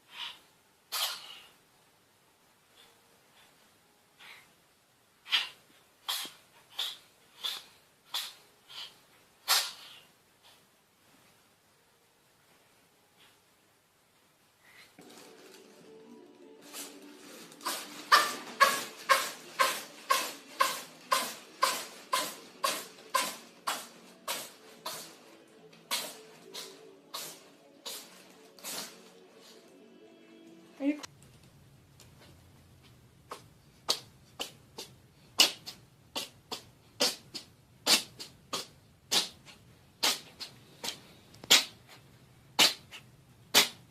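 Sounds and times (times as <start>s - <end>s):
cat sneezing: 0.1s - 1.6s, 5.2s - 10.6s, 17.6s - 25.2s, 25.9s - 29.1s, 33.3s - 42.0s, 42.6s - 43.9s.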